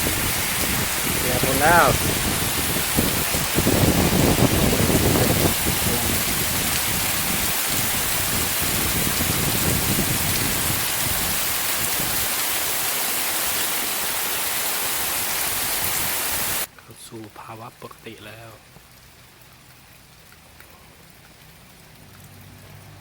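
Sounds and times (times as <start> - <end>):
wind gusts rumbling: 0.0 - 12.4
heavy rain pouring: 0.0 - 16.7, 17.6 - 23.0.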